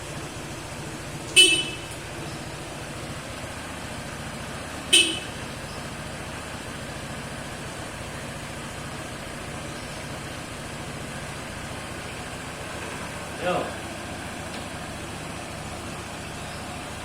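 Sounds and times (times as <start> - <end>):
engine idling: 0.0 - 17.0
vehicle horn toot: 1.3 - 2.0, 4.9 - 5.6.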